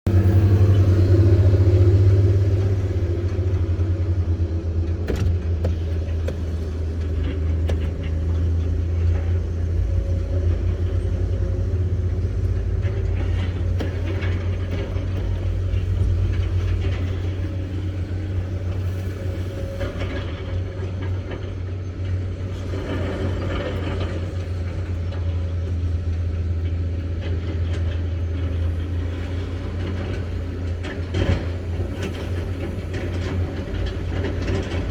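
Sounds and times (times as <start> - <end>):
excavator diesel engine droning: 0.0 - 34.9.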